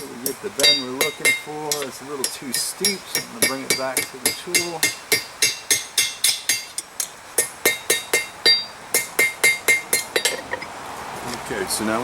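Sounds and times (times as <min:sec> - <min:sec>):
hammer ringing on anvil: 0:00.6 - 0:06.8, 0:07.4 - 0:10.5.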